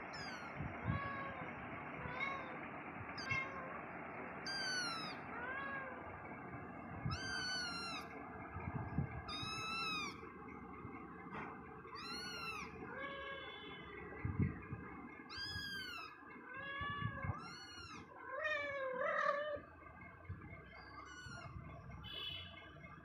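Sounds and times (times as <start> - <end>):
cat meowing: 0.1 - 2.6, 3.2 - 3.7, 4.4 - 6.0, 7.1 - 8.1, 9.2 - 10.2, 11.9 - 13.8, 15.3 - 19.7, 20.8 - 21.6.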